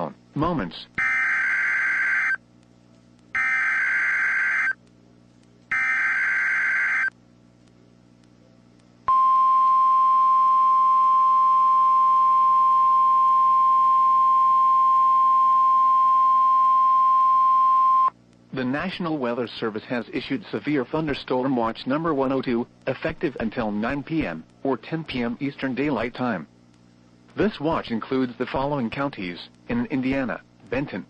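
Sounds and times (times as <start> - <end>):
modem-like data tones: 1.0 - 2.4, 3.3 - 4.8, 5.7 - 7.1
single-pitch warning alarm tone: 1.0 - 2.4, 3.4 - 4.8, 5.7 - 7.1.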